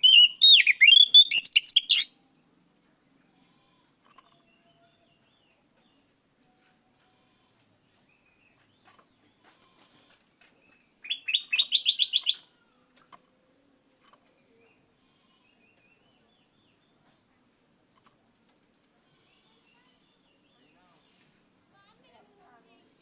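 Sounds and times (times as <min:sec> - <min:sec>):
bird whistles and chirps: 0:00.0 - 0:02.1, 0:11.0 - 0:12.5
rapid sharp bird notes: 0:00.0 - 0:02.1.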